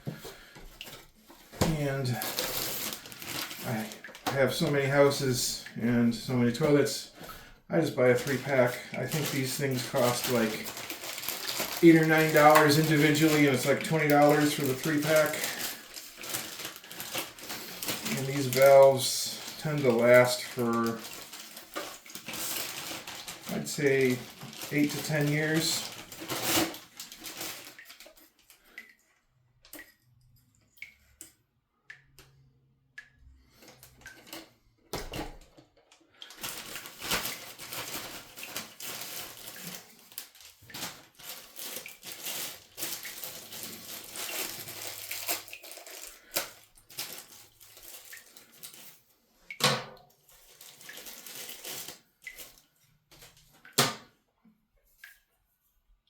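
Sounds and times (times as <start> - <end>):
water splashing in tank: 0.0 - 35.4, 36.2 - 52.7
rustling: 0.1 - 4.3, 8.2 - 28.3, 36.3 - 49.0.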